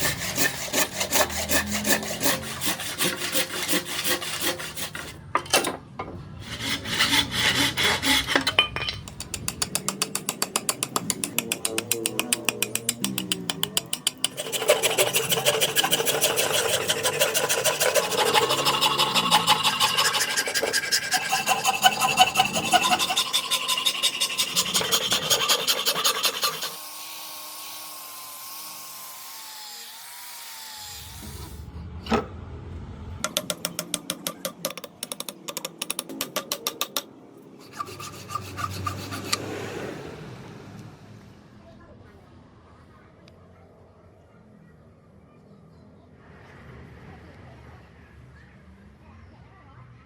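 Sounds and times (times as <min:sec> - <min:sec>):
rasp scraping wood: 0:00.0 - 0:05.2, 0:06.4 - 0:26.8, 0:37.6 - 0:39.4.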